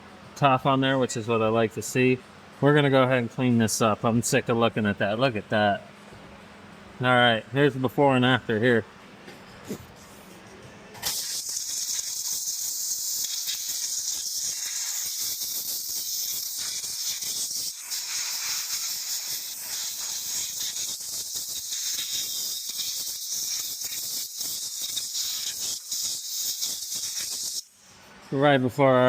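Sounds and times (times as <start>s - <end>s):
steady hiss: 11.0s - 27.7s.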